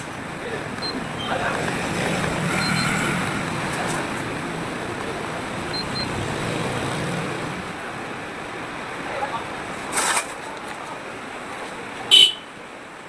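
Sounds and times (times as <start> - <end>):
road traffic rumble: 0.0 - 13.0
high-pitched electronic beeps: 0.8 - 1.4, 2.5 - 3.0, 5.7 - 6.2.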